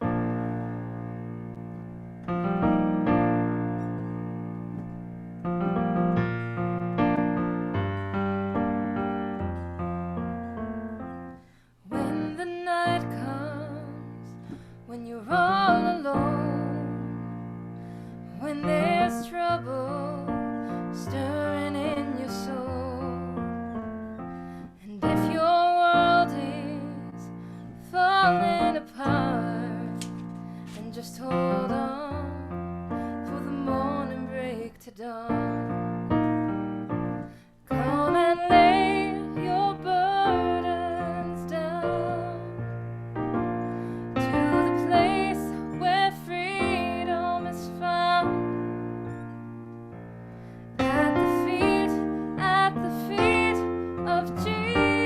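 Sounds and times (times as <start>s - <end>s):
piano sustained chords: 35.5s - 55.0s.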